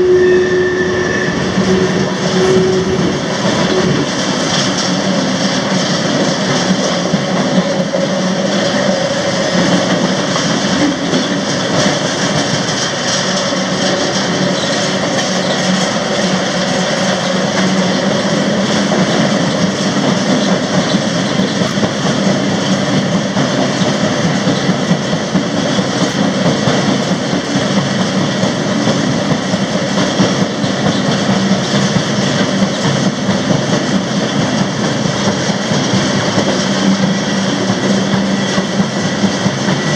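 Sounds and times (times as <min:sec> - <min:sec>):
freight train wheels rumbling: 0:00.0 - 0:39.9.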